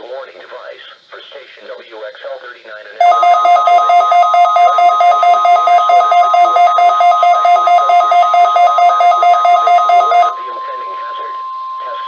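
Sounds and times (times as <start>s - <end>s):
steady warning alarm tone: 3.0s - 12.0s
two-pitch alarm beeping: 3.0s - 12.0s.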